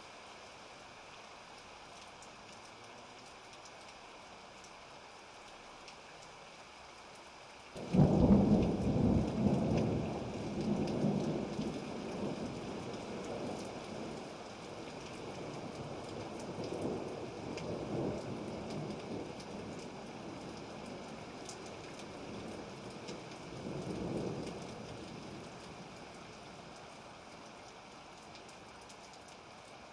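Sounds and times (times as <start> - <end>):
steady rain hiss: 0.0 - 29.9
faint thunder rumbles: 7.8 - 27.1.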